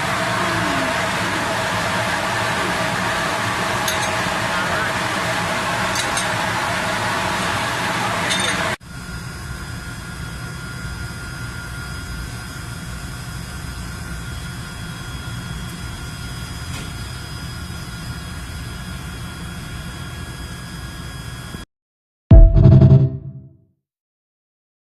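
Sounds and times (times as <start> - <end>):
steam heating rumble and hiss: 0.0 - 21.4
loud music burst: 22.3 - 23.5.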